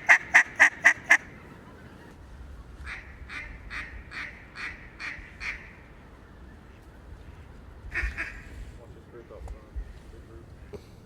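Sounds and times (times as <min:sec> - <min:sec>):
duck quacking: 0:00.0 - 0:01.3, 0:07.9 - 0:08.5
low wind rumble: 0:00.0 - 0:11.0.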